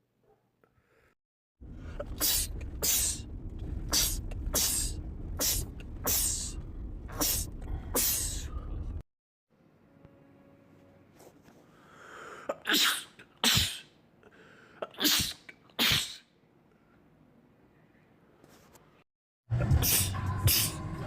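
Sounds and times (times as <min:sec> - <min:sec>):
steady low rumble: 0:01.6 - 0:09.0
man sneezing: 0:12.5 - 0:13.9, 0:14.8 - 0:16.3.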